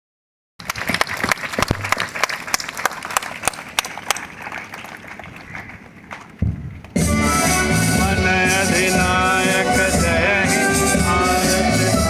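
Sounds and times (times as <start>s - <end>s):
audience clapping: 0.6s - 6.4s.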